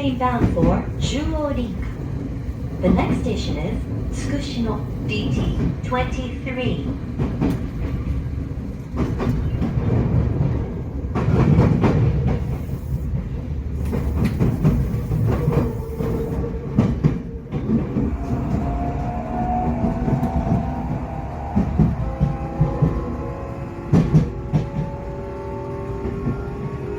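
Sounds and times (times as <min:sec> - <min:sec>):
rail-joint clacks: 0:00.0 - 0:26.9
wheel and rail rumble: 0:00.0 - 0:26.9
traction gear whine: 0:17.4 - 0:26.9.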